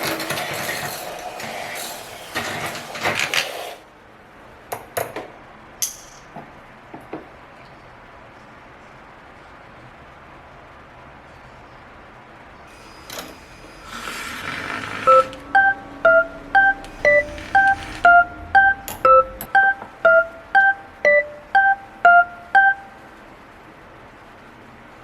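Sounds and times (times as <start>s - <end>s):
electronic beeper tune: 15.1s - 23.1s.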